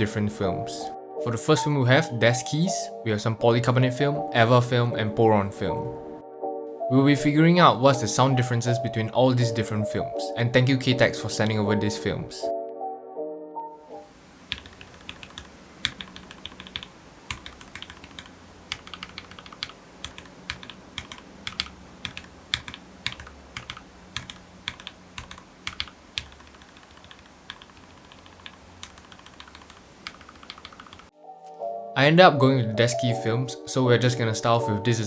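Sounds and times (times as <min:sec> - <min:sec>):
mechanical keyboard typing: 0:14.5 - 0:31.1.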